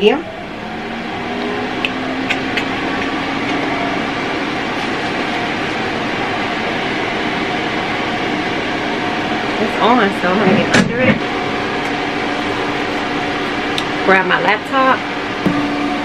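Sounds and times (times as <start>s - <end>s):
low hum: 15.5s - 16.0s.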